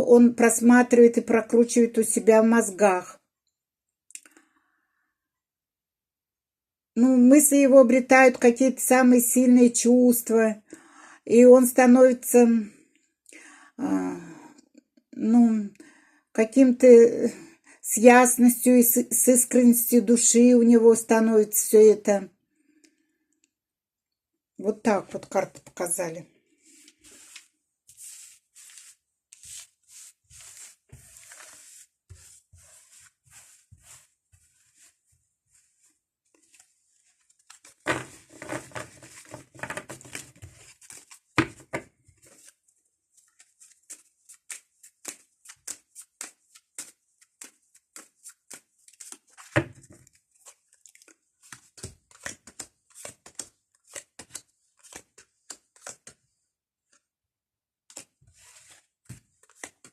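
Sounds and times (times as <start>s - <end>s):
cards shuffling: 26.7s - 42.6s, 43.2s - 56.2s, 57.9s - 59.9s
playing cards flicking and rustling: 26.8s - 35.0s, 35.6s - 56.2s, 57.9s - 59.9s
cards tapped on table: 37.8s - 38.8s.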